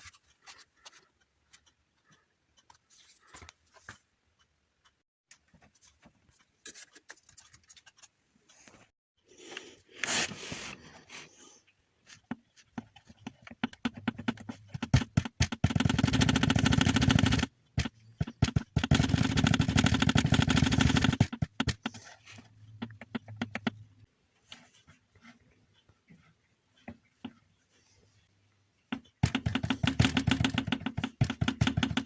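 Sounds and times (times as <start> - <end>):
rapid rhythmic engine knocking: 13.6 - 21.9, 29.2 - 32.0.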